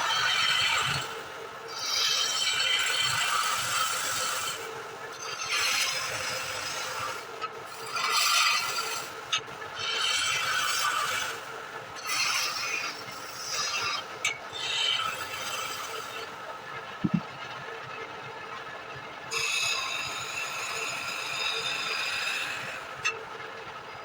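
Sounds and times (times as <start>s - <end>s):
tool scraping spinning wood: 19.3s - 23.3s
wood lathe humming: 19.4s - 23.0s.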